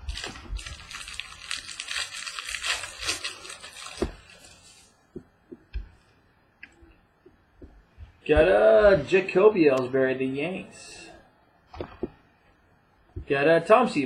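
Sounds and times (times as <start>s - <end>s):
crinkly packaging torn open: 0.0s - 4.9s.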